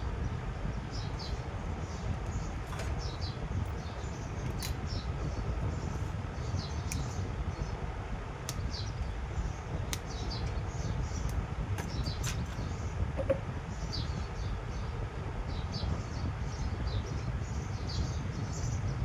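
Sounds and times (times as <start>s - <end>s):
steady low rumble: 0.0s - 19.0s
small birds chirping: 0.2s - 14.9s
sharp clicks: 4.4s - 5.0s, 6.8s - 7.3s, 8.5s - 9.2s.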